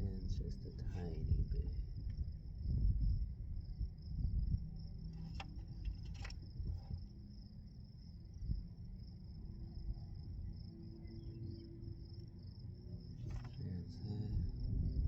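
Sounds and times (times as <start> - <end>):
crickets chirring: 0.0 - 15.0
low rumbling handling noise: 4.0 - 7.1, 13.0 - 15.0.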